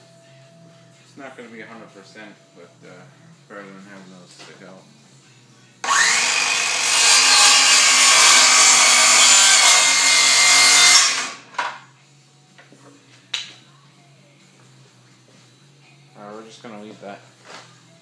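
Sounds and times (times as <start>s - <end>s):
power tool cutting wood: 5.8s - 11.5s.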